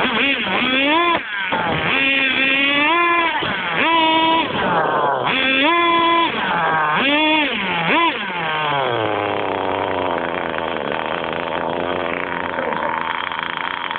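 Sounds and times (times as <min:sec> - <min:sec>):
rc car engine revving and idling: 0:00.0 - 0:13.9.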